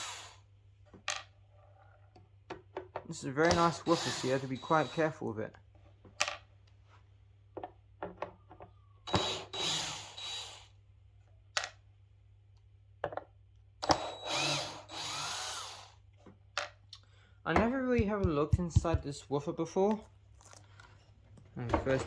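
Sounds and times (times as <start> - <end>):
power drill running: 0.0 - 0.4, 3.4 - 5.2, 9.0 - 10.8, 13.8 - 16.0.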